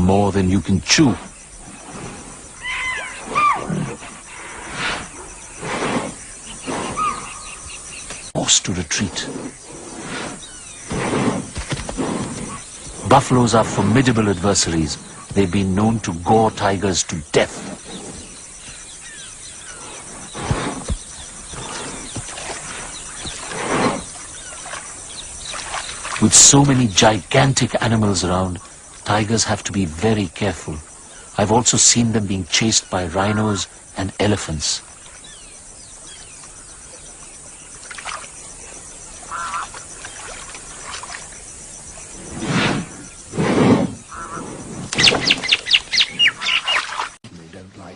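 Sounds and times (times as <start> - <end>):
bird calls: 0.0 - 27.2, 29.5 - 47.2
pulsing insect buzz: 0.9 - 29.5, 34.6 - 47.2
animal snarl: 1.8 - 7.4, 9.1 - 13.0, 19.8 - 22.2, 23.4 - 24.1, 42.2 - 45.2.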